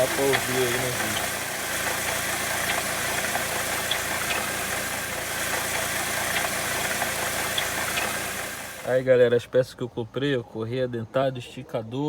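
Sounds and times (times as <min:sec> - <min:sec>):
engine bearing noise: 0:00.0 - 0:09.0
engine idling: 0:00.0 - 0:09.0.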